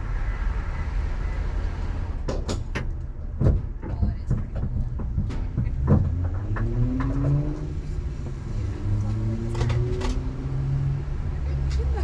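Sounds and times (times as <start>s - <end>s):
car engine revving: 5.7s - 11.6s.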